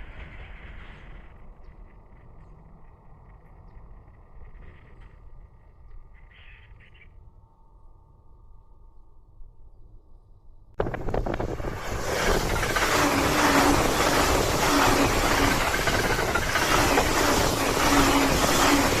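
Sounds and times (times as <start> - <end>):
train wheels rumbling on rails: 0.0 - 5.2, 10.8 - 19.0
low hum: 0.0 - 6.3, 7.0 - 19.0.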